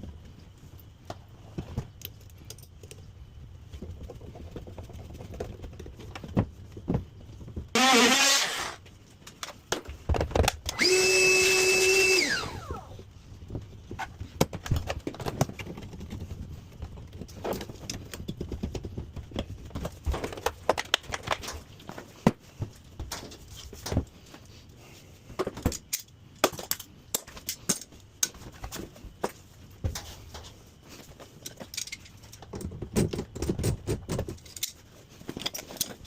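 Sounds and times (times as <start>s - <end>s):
power drill winding down: 7.8s - 8.8s, 10.7s - 13.0s
tools and parts clattering: 25.3s - 36.0s.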